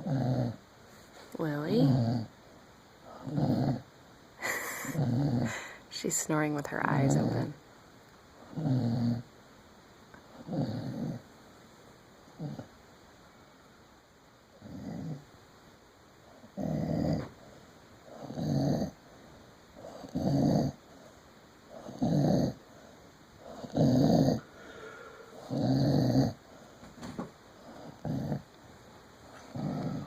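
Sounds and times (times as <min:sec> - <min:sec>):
person snoring: 0:04.4 - 0:05.8, 0:23.6 - 0:26.4, 0:29.5 - 0:30.0.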